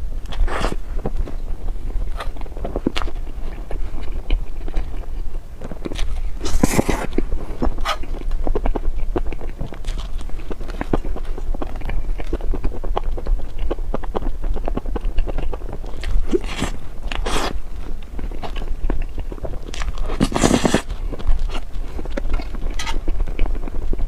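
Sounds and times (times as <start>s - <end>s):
chewing and wet mouth clicks: 2.0s - 24.0s
crunching bites: 5.7s - 23.6s.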